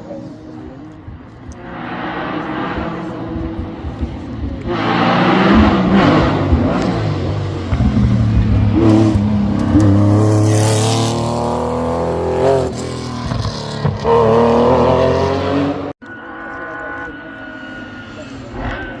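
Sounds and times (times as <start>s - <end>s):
racing car engine revving: 1.5s - 15.9s.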